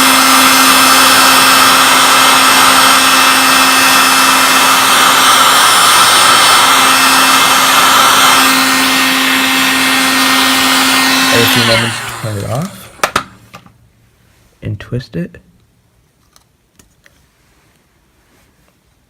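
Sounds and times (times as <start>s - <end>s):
heat gun blowing air: 0.0s - 13.6s.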